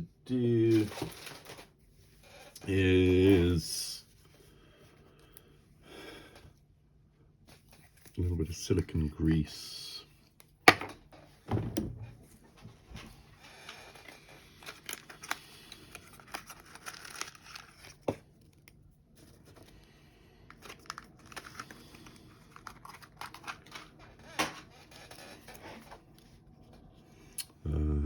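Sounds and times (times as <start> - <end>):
crinkly rustling and scraping: 0.6 - 4.6, 7.4 - 8.6, 12.1 - 27.2.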